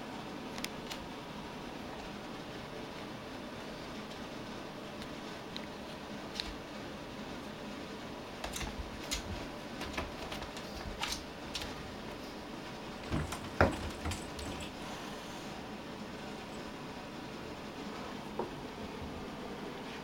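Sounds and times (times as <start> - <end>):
cat claws scratching and tapping: 8.4 - 11.9, 13.0 - 14.8.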